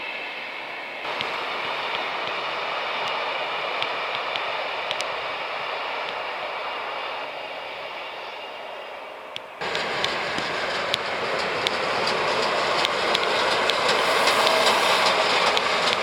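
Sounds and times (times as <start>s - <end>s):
train rushing on rails: 0.0s - 16.0s
wheel clicks: 9.6s - 16.0s
wheel squeal: 9.6s - 16.0s.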